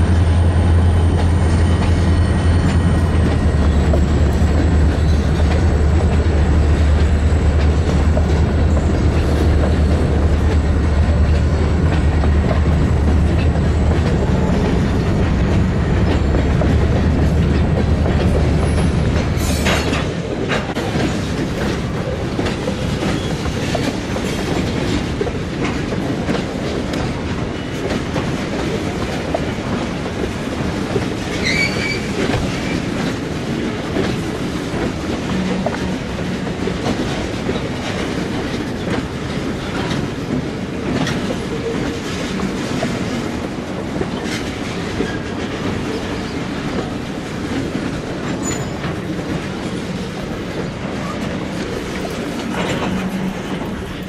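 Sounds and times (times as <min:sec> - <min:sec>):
freight train rumbling: 0:00.0 - 0:54.0
wheels clicking over rail joints: 0:01.0 - 0:54.0
high wheel squeal: 0:31.4 - 0:32.2.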